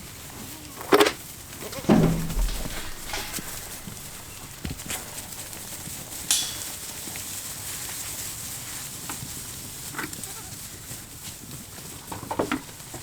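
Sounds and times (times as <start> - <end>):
goat hooves clattering: 0.9 - 13.0
sharp click: 1.9 - 5.6, 6.3 - 6.9.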